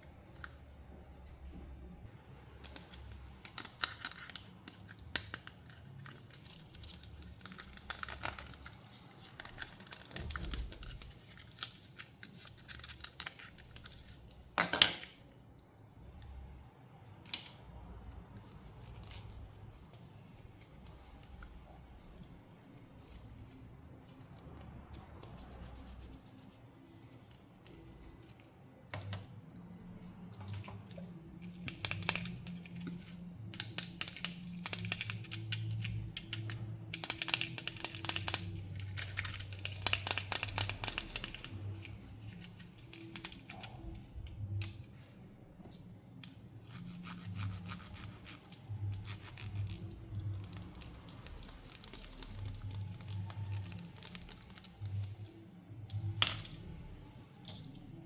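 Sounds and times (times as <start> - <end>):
plastic packaging rustling and tearing: 2.7 - 14.6, 37.0 - 43.9, 46.8 - 55.4.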